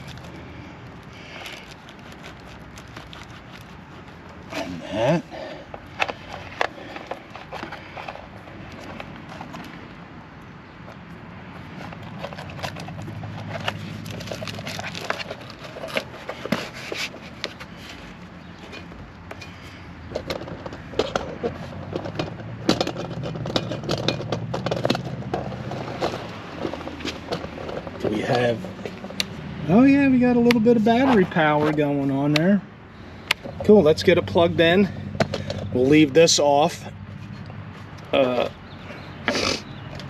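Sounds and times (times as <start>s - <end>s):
clicks and knocks of tools: 18.6s - 29.4s.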